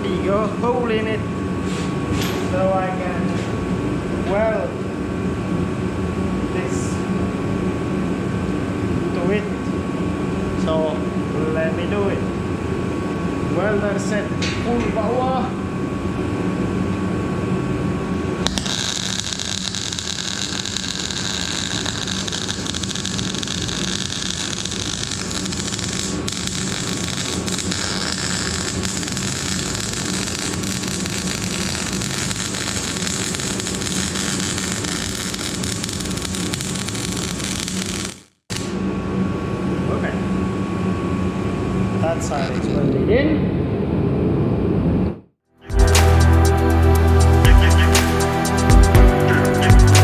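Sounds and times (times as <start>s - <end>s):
welding arc hiss and crackle: 18.2s - 38.8s.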